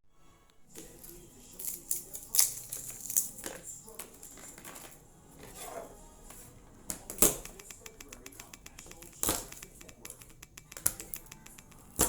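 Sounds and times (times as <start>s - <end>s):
quick light clicks and taps: 6.9s - 12.0s.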